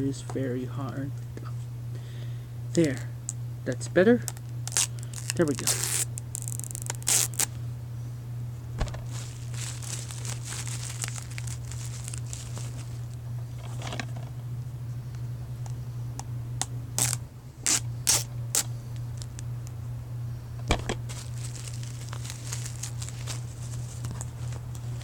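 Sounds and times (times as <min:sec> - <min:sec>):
steady low hum: 0:00.0 - 0:25.0
plastic case crinkling and scratching: 0:08.8 - 0:14.3, 0:20.7 - 0:25.0.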